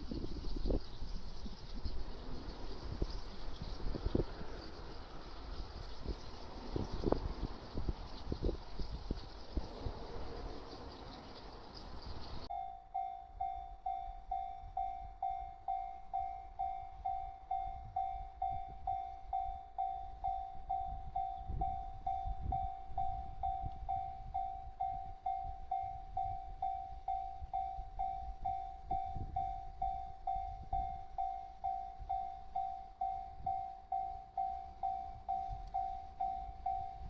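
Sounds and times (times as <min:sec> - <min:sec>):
level-crossing alarm bell: 0:12.4 - 0:37.0.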